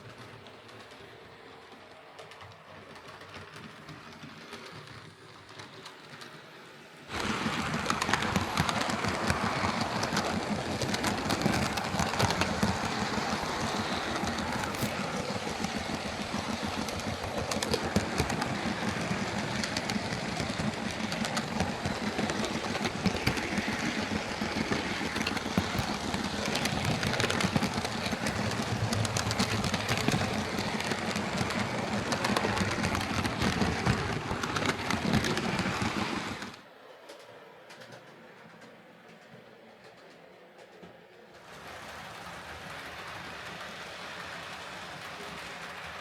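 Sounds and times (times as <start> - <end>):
wheels clicking over rail joints: 0.0 - 46.0
model train motor whirring: 1.8 - 36.6.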